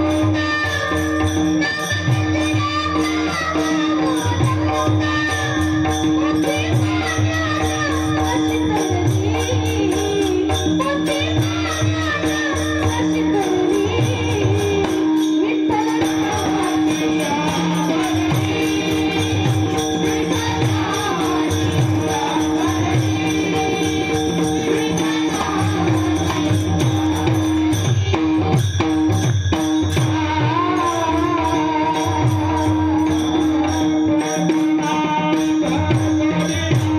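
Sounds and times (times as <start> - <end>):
jingling metal percussion: 0.0 - 36.9.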